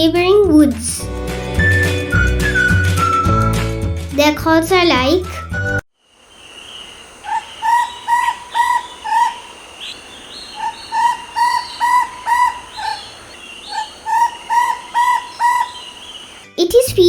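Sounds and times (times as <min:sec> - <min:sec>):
owlet calling: 0:06.2 - 0:16.6.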